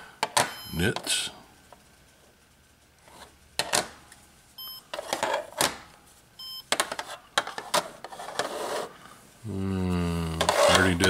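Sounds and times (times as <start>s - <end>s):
short electronic beeps: 0.5s - 0.8s, 4.6s - 4.9s, 6.4s - 6.6s.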